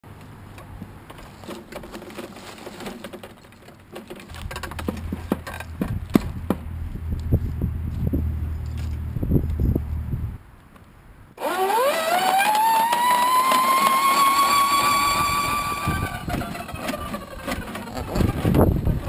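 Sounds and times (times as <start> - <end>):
clicks and knocks: 0.5 - 7.3
motor humming: 11.4 - 19.0.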